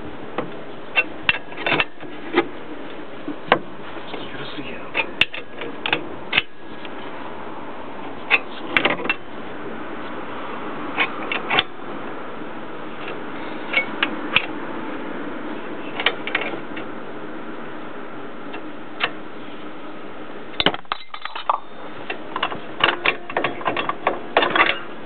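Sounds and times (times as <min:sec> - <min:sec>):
hand tools clanking on metal: 0:20.6 - 0:24.9.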